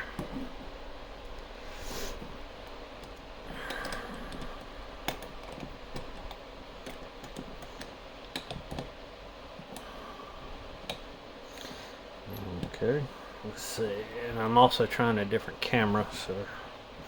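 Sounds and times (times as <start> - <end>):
lock clicking and knocking: 2.7 - 9.0.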